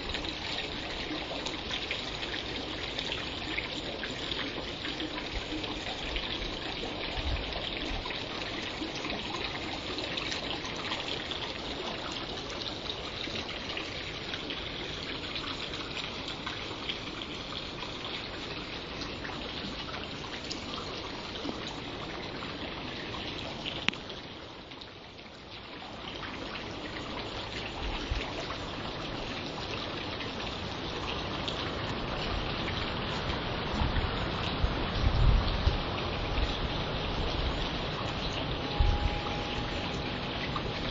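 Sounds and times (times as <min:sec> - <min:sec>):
wind rushing through foliage: 0:05.1 - 0:10.1, 0:30.6 - 0:40.9
wind buffeting microphone: 0:32.3 - 0:40.9.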